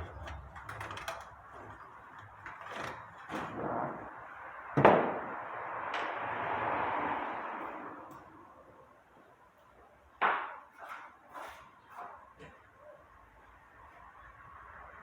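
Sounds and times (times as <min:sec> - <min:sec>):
tool scraping sheet metal: 0:00.0 - 0:04.4, 0:10.6 - 0:12.6.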